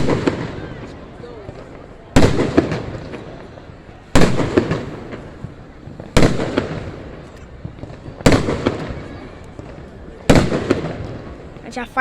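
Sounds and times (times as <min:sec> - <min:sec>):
fireworks bursting: 0:00.0 - 0:12.0
small fireworks pops: 0:00.0 - 0:12.0.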